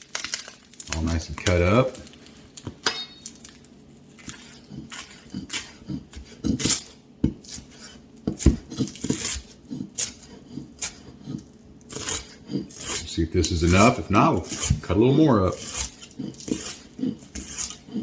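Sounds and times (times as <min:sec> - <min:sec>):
kitchen utensils and dishes clinking: 0:02.7 - 0:03.5.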